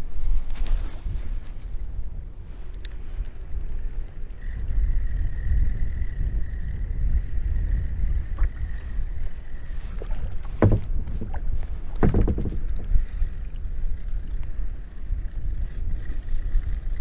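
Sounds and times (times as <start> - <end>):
wind rumbling on microphone: 0.0 - 17.0
sharp knocks: 10.5 - 11.4, 12.0 - 12.6.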